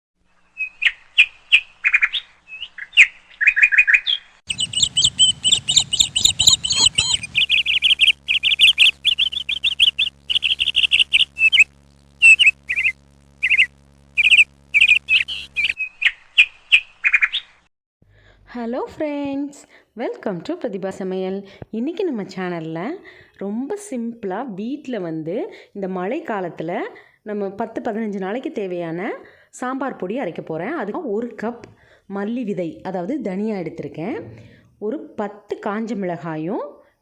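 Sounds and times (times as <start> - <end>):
small birds chirping: 0.6 - 17.6
faint low hum: 4.5 - 15.8, 31.3 - 35.2.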